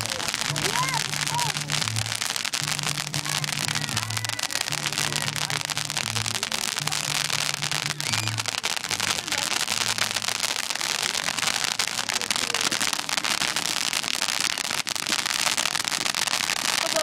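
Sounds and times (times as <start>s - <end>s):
slow low music: 0.0s - 10.3s
firework fountain crackling: 0.0s - 17.0s.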